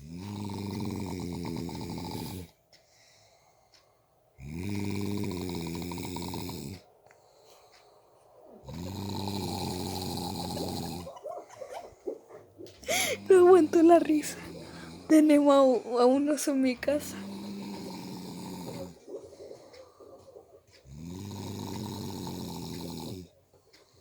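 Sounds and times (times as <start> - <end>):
man snoring: 0.0 - 2.6, 4.4 - 6.8, 8.6 - 11.1, 12.9 - 15.2, 16.8 - 23.4
quiet breaths: 0.0 - 24.0.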